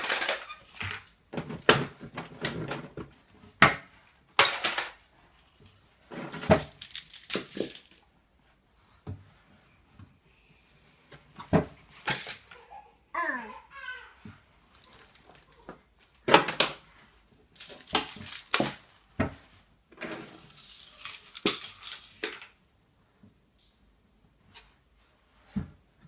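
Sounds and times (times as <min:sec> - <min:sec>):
small hard objects clattering: 0:00.0 - 0:08.1, 0:11.9 - 0:12.6, 0:14.7 - 0:16.7, 0:17.6 - 0:19.2, 0:20.0 - 0:22.6
child's high voice: 0:12.6 - 0:14.2.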